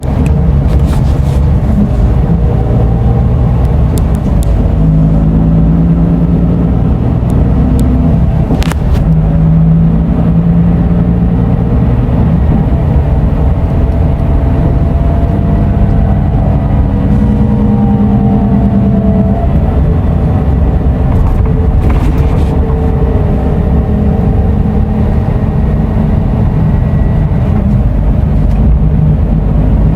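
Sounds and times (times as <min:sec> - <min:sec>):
diesel coach engine drone: 0:00.0 - 0:29.9.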